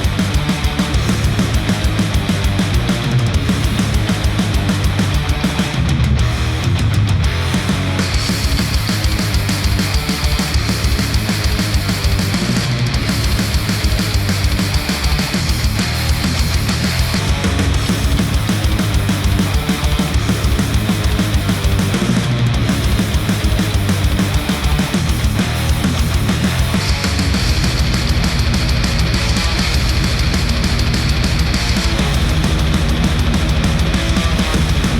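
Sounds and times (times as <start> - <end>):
fast driving drum beat: 0.0 - 34.9
heavy rock instrumental: 0.0 - 34.9.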